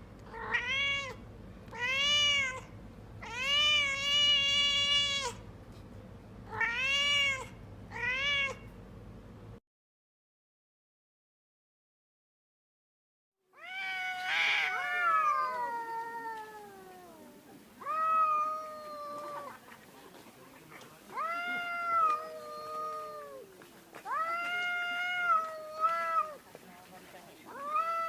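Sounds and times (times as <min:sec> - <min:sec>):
cat meowing: 0:00.3 - 0:05.4, 0:06.5 - 0:08.7, 0:13.6 - 0:19.5, 0:21.1 - 0:26.4, 0:27.5 - 0:28.0.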